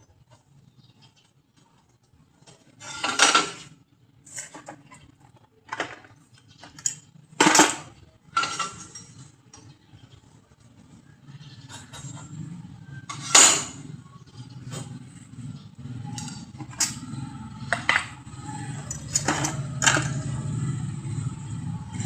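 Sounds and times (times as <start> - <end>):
metal pieces clanking: 2.8 - 3.7, 5.7 - 9.3, 16.2 - 17.1, 17.7 - 20.3.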